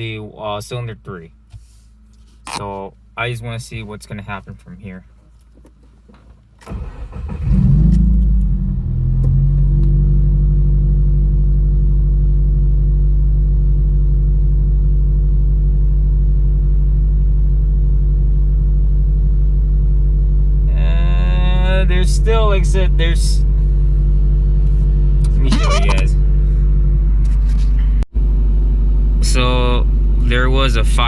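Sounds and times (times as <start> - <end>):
car engine starting and idling: 6.6 - 18.6.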